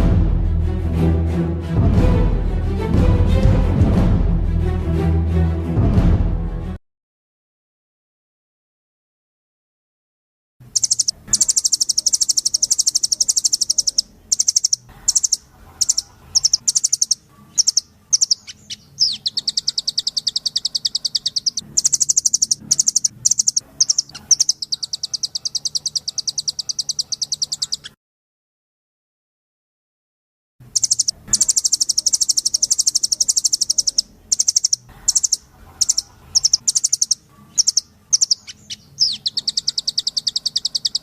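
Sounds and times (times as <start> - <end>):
bird chirping trills: 10.6 - 28.0, 30.6 - 41.0.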